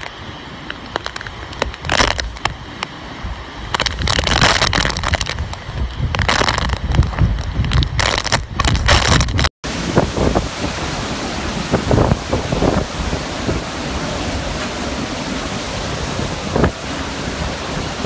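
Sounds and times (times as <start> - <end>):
crackling hits: 0.0 - 2.8, 3.6 - 9.5
storm wind and heavy rain: 0.0 - 18.0
wind buffeting microphone: 0.0 - 18.0.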